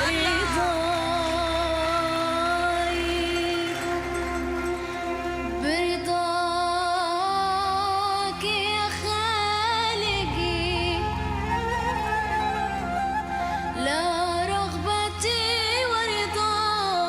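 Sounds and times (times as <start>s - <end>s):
child singing with vibrato: 0.0s - 3.8s
instrumental accompaniment: 0.0s - 9.2s.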